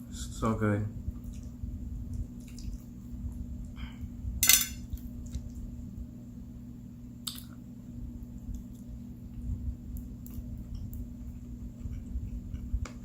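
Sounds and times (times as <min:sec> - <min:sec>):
low hum: 0:00.0 - 0:13.0
cutlery scraping and clinking: 0:04.4 - 0:04.8.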